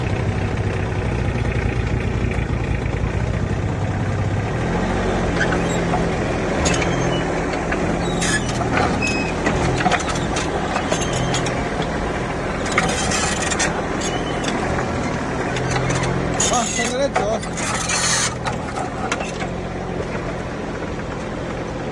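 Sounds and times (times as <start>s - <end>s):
excavator diesel engine running: 0.0s - 21.9s
machine squeaks: 5.4s - 6.0s, 6.6s - 11.6s, 12.6s - 19.5s.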